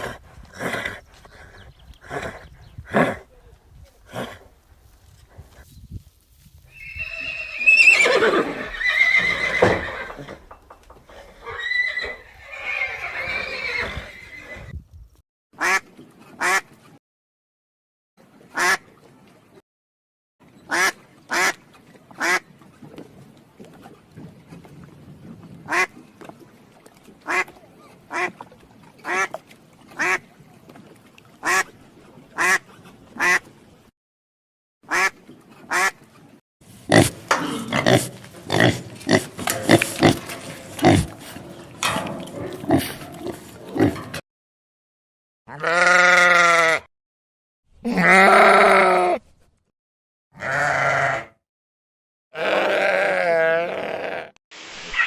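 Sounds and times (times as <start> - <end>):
horse whinny: 6.7 - 10.4, 11.3 - 14.7
duck quacking: 15.6 - 16.7, 18.6 - 18.8, 34.9 - 36.0.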